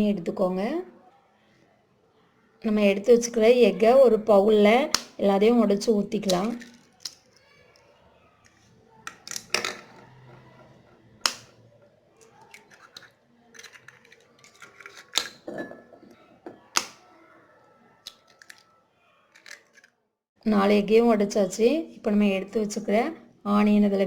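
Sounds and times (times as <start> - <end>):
eggs cracking on bowl rim: 6.3 - 7.4, 12.4 - 15.5.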